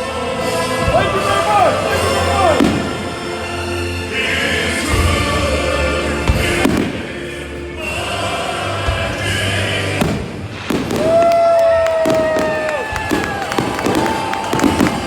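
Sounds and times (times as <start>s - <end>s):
loud music: 0.0s - 11.3s
fireworks bangs: 2.0s - 3.3s, 6.3s - 7.2s, 8.9s - 15.0s.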